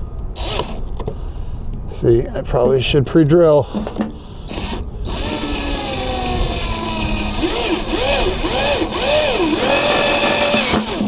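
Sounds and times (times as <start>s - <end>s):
power drill driving a screw: 0.4s - 0.8s, 4.5s - 11.0s.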